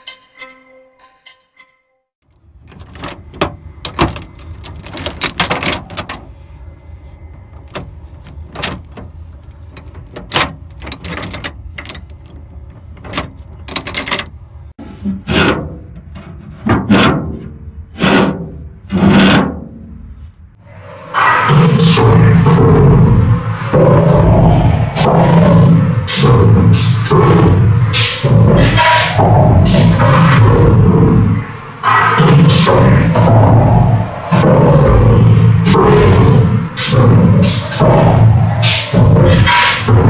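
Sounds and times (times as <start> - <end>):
knocks and clatters: 2.2 - 6.3, 7.3 - 14.4
steady low rumble: 2.2 - 40.0.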